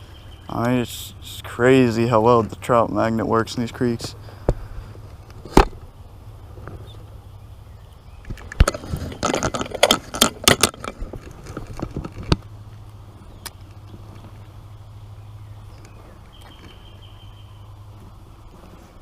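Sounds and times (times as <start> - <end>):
low steady hum: 0.0 - 19.0
gear clicking and rattling: 8.4 - 12.5.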